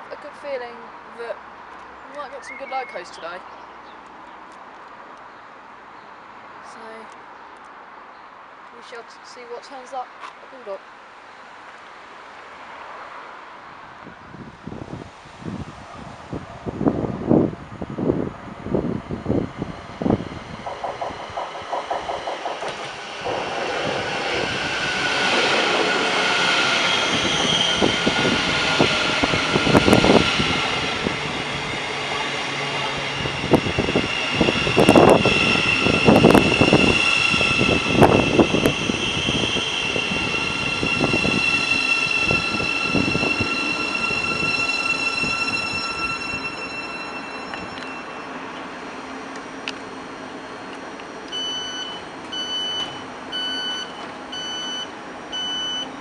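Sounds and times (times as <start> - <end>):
train high whine: 14.3 - 56.0
train wheels knocking over rail joints: 20.6 - 26.0.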